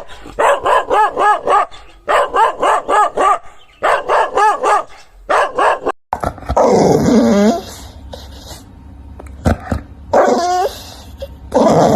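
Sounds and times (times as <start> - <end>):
dog barking: 0.0 - 6.0, 10.1 - 10.8.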